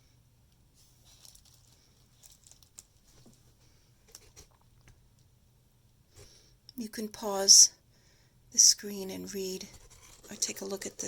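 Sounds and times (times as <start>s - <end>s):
paper and packaging rustling: 1.0s - 3.5s, 9.6s - 11.0s.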